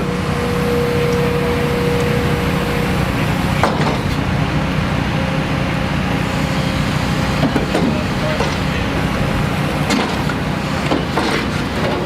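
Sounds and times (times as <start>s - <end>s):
heavy machinery engine rumbling: 0.0s - 12.0s.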